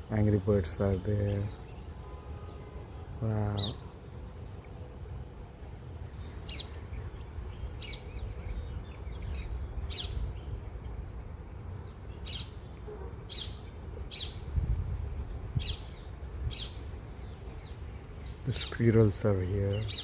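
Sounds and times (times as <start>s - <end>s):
birds giving sharp calls: 1.3s - 4.0s, 6.1s - 11.2s, 11.8s - 14.6s, 15.2s - 20.0s.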